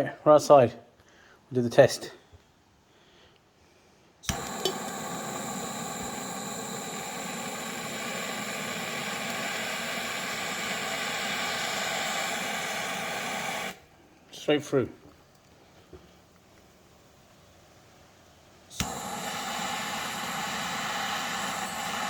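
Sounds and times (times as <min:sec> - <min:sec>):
jet flame hissing: 0:04.2 - 0:13.9, 0:18.7 - 0:22.0
lighter clicking: 0:04.3 - 0:13.8, 0:18.7 - 0:22.0.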